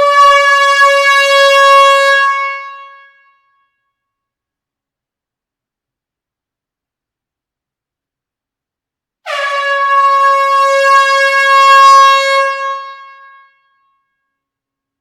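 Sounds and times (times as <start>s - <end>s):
air horn blast: 9.2s - 13.7s.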